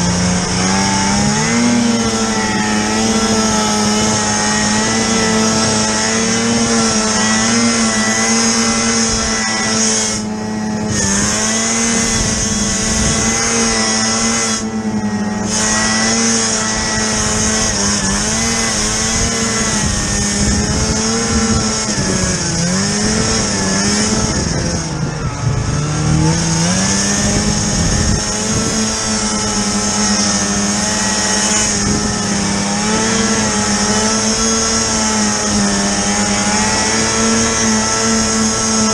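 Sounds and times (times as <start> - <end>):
snowmobile engine running: 0.0 - 38.9.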